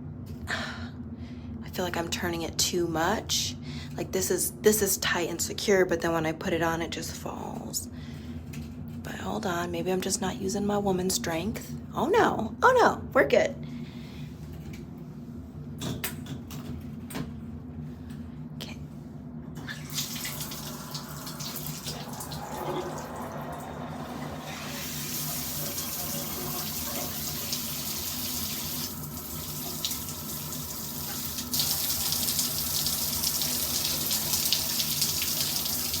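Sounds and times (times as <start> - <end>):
shower head spraying water: 19.9 - 36.0.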